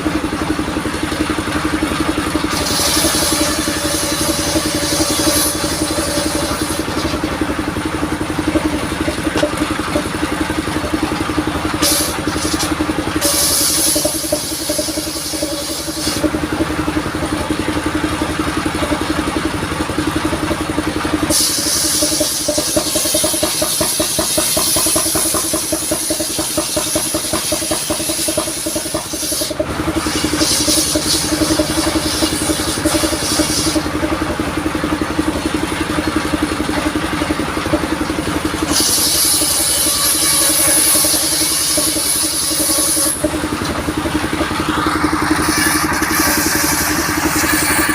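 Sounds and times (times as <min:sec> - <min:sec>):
saw rig engine running: 0:00.0 - 0:47.9
saw cutting wood hissing: 0:01.2 - 0:09.6, 0:11.3 - 0:17.0, 0:21.2 - 0:34.3, 0:38.5 - 0:47.9.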